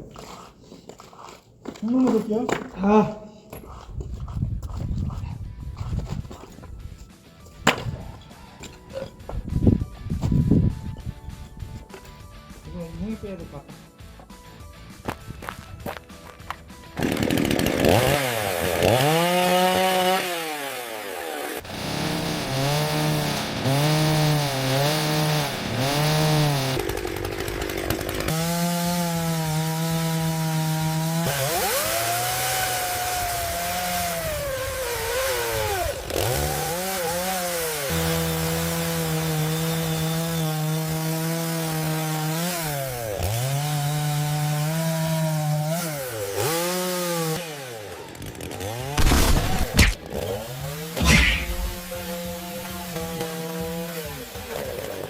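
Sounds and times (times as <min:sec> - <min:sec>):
chainsaw cutting wood: 0:05.8 - 0:12.6, 0:15.5 - 0:55.0
sharp knocks: 0:07.6 - 0:08.4.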